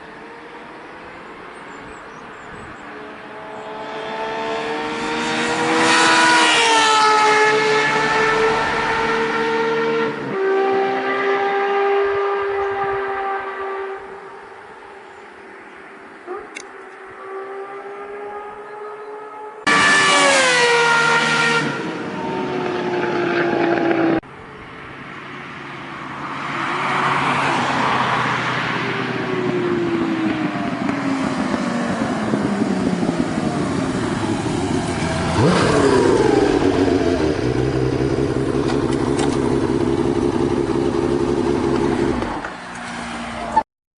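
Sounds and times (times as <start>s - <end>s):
motorcycle engine running: 29.4s - 42.4s.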